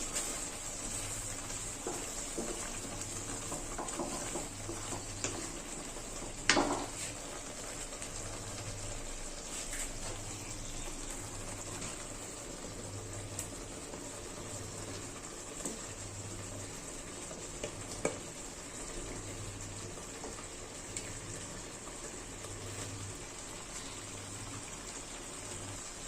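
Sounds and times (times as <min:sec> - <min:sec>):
patties sizzling in a pan: 0:00.0 - 0:26.0.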